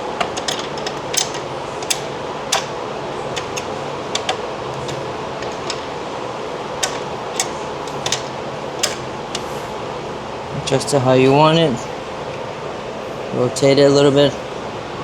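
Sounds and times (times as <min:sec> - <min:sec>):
wrench clicking: 0:00.0 - 0:06.0, 0:06.8 - 0:09.8
low background hum: 0:00.0 - 0:15.0.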